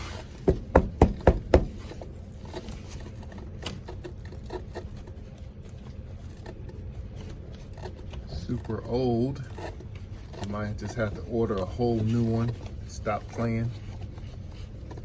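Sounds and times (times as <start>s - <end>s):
sharp knocks: 0.4s - 1.9s.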